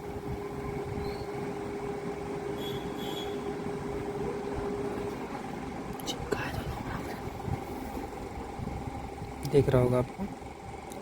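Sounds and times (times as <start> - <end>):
steady background noise: 0.0 - 11.0.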